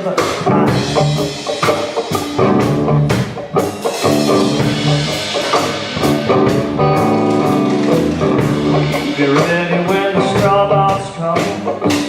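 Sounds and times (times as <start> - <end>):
steady percussive beat: 0.0 - 12.0
guitar chords ringing: 0.4 - 12.0.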